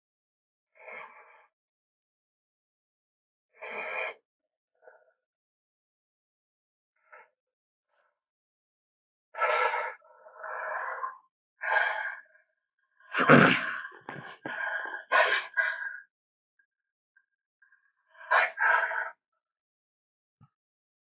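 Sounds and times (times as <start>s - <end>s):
cartoon hyena vocal bursts: 13.2s - 14.4s.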